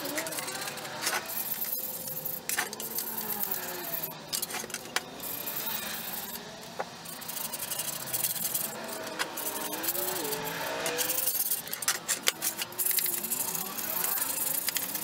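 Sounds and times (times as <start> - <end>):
scraper scraping metal: 0.0 - 15.0
wavering squeaks: 7.1 - 15.0.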